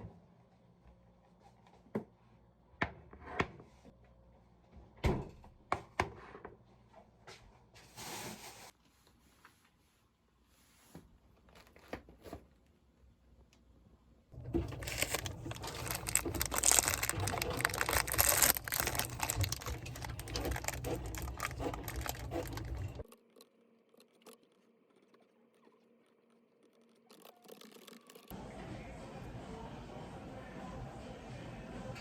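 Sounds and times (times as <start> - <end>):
material crinkling and rustling: 14.4 - 23.1.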